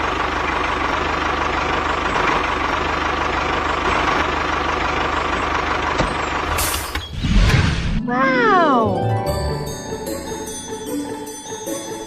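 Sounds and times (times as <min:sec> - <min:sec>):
engine idling with whine: 0:00.0 - 0:07.2.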